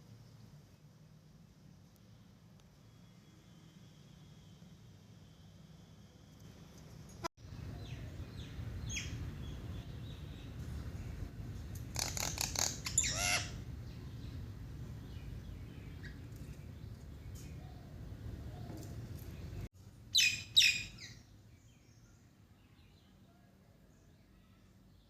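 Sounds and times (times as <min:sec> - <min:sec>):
small birds chirping: 0:06.3 - 0:23.3.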